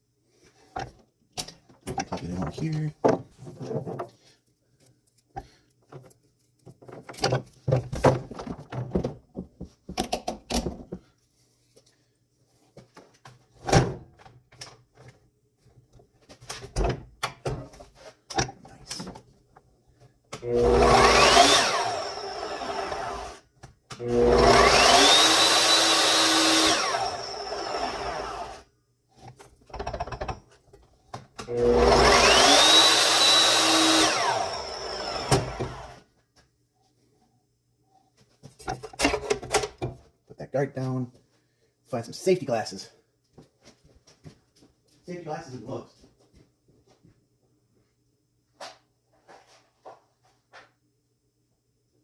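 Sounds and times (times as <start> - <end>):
chop saw motor whining: 20.4 - 23.4, 24.0 - 28.7, 31.4 - 36.0.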